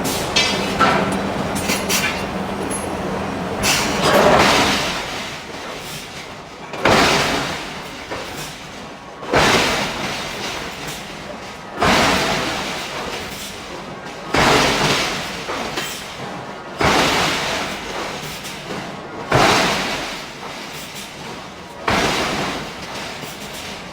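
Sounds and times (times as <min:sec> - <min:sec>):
forging hammer striking steel: 0:00.0 - 0:04.6
machinery noise with low hum: 0:00.0 - 0:05.0.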